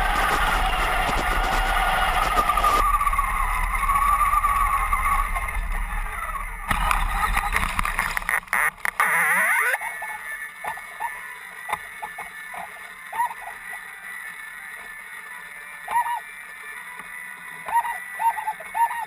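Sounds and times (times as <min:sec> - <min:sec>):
low rumble: 0:00.0 - 0:08.6.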